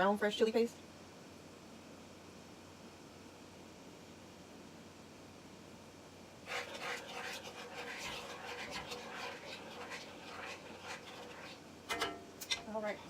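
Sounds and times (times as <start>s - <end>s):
sauce stirred in a pot: 6.4s - 13.0s.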